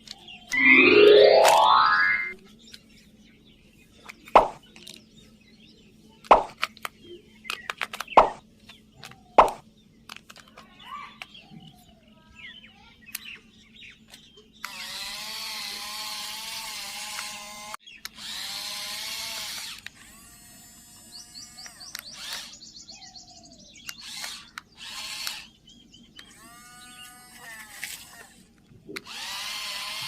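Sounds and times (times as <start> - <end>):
small electric motors whirring: 14.6 - 22.6, 23.9 - 25.5, 26.2 - 30.0.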